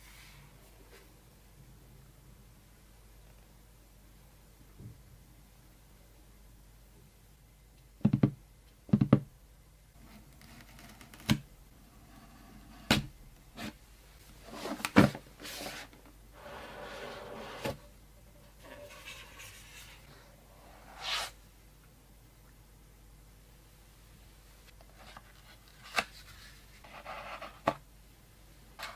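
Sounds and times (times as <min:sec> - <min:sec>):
scraping and sliding: 0:14.4 - 0:17.9, 0:18.5 - 0:20.2.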